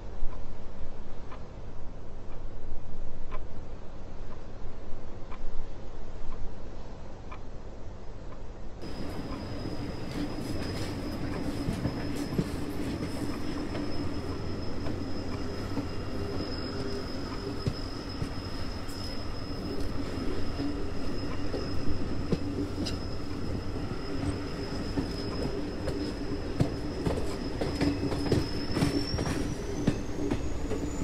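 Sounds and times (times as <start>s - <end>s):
train rumble: 0.0s - 31.0s
thin high whine: 8.8s - 31.0s.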